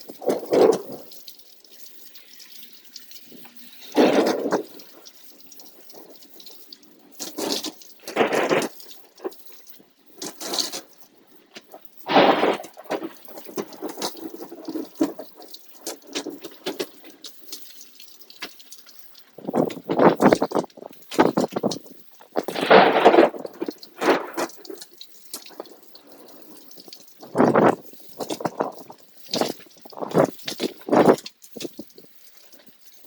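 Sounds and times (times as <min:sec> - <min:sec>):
rain dripping and pattering: 0:00.0 - 0:33.0
crunchy crackling microphone bursts: 0:03.9 - 0:04.9, 0:07.4 - 0:09.3, 0:12.1 - 0:15.2, 0:19.4 - 0:24.9, 0:27.2 - 0:32.1.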